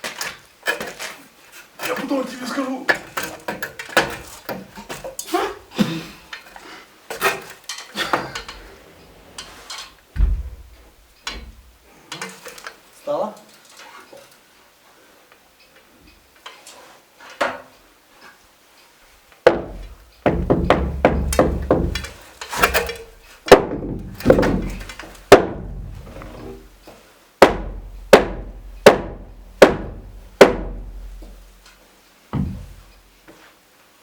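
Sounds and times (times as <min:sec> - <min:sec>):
hammer striking wood: 0:19.4 - 0:26.0, 0:27.4 - 0:31.3, 0:32.3 - 0:32.8.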